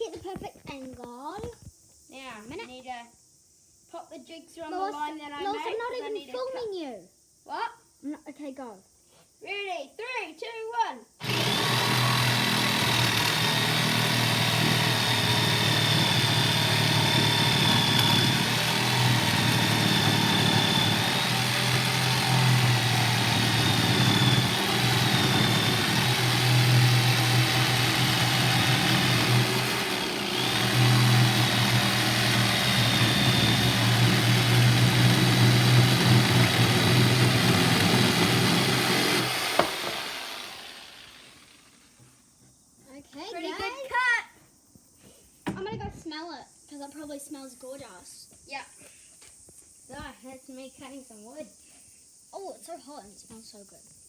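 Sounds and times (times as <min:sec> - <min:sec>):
electric jigsaw cutting wood: 0:11.2 - 0:41.8.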